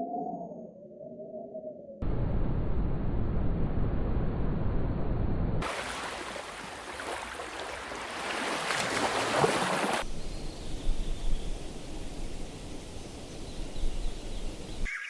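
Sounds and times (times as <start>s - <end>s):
wind: 0.0s - 15.0s
rushing water: 5.6s - 10.1s.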